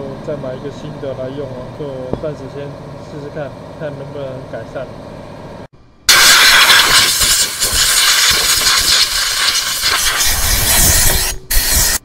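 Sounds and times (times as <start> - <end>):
air grinder grinding metal: 6.1 - 12.0.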